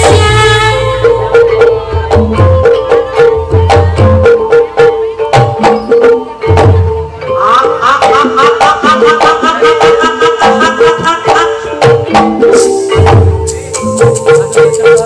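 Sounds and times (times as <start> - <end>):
steady held note: 0.0 - 2.1
deep drum beats: 0.0 - 15.0
quick hand-drum strokes: 0.0 - 15.0.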